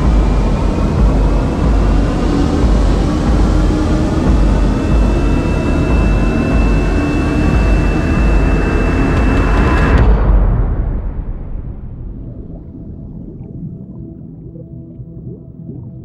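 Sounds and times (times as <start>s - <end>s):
engine running: 0.0s - 10.0s
thin high whine: 0.0s - 10.0s
loud rushing noise: 0.0s - 13.3s.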